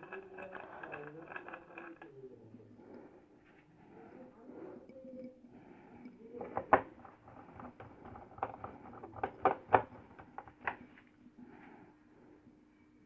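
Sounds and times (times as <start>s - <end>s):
hard objects clicking and knocking: 0.0s - 3.1s, 6.0s - 11.0s.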